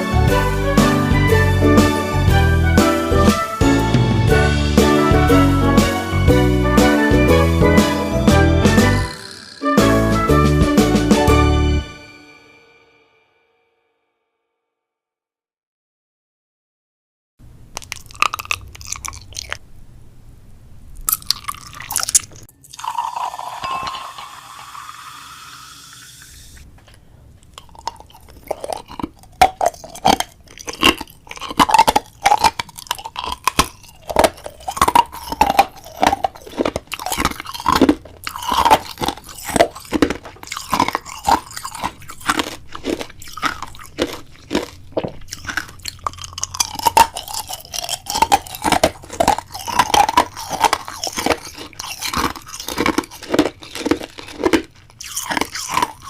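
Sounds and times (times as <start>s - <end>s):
crisp crunching: 17.7s - 19.6s, 21.0s - 23.0s, 27.5s - 56.0s.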